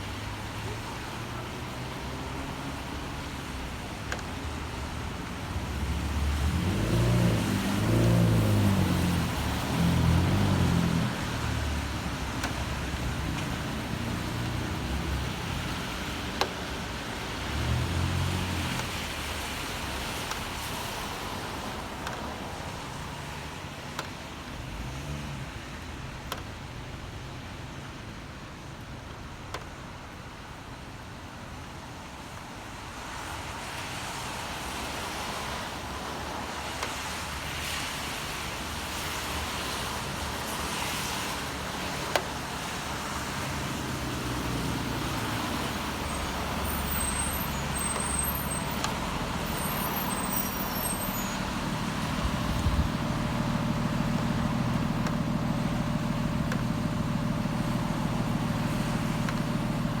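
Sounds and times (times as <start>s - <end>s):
city street traffic: 0.0s - 60.0s
heavy vehicle engine: 41.1s - 60.0s.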